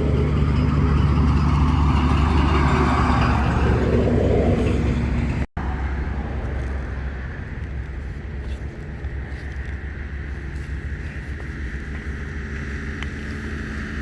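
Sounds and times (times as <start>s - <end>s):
engine running: 0.0s - 14.0s.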